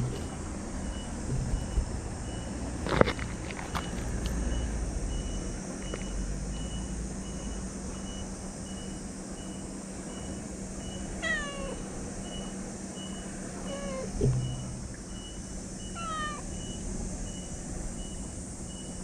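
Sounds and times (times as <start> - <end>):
steady low hum: 4.5 - 19.0
cat meowing: 11.2 - 11.9, 13.6 - 14.2, 15.9 - 16.5
faint high beeps: 12.2 - 19.0.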